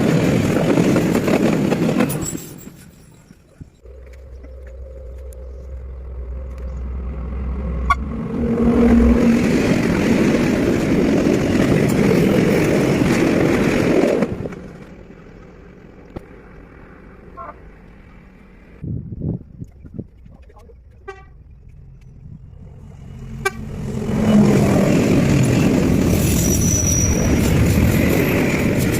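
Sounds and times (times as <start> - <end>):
train passing at speed: 0.0 - 3.1, 3.8 - 19.2, 21.5 - 28.9
low steady drone: 3.8 - 9.4.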